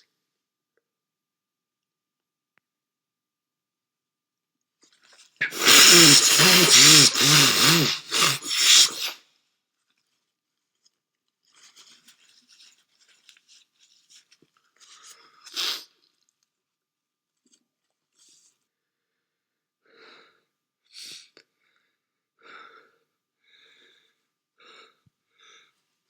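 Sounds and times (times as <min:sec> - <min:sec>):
person blowing nose: 0:05.4 - 0:09.2
person sniffing: 0:05.4 - 0:09.2.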